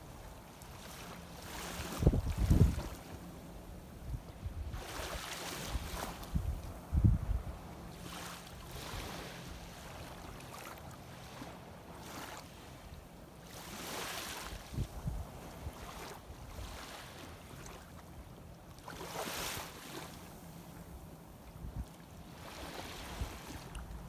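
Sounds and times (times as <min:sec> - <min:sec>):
seawater sloshing: 0:15.2 - 0:20.6, 0:21.4 - 0:24.0.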